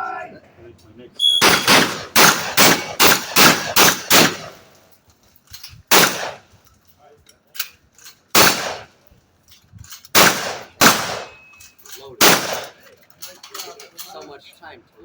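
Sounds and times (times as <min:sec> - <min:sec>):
shotgun shots: 0:01.2 - 0:04.6, 0:05.9 - 0:06.4, 0:08.3 - 0:08.9, 0:10.1 - 0:11.4, 0:12.2 - 0:12.8.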